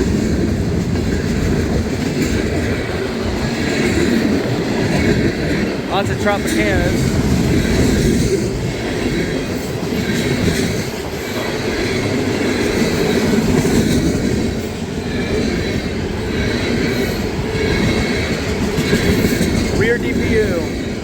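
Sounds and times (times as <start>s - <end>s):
train wheels rumbling on rail: 0.0s - 21.0s
wheels clicking over rail joints: 0.0s - 21.0s.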